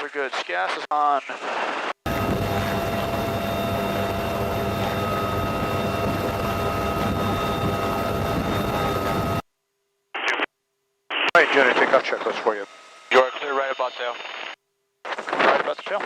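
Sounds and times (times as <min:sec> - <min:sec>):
helicopter turbine engines running: 0:02.1 - 0:09.4.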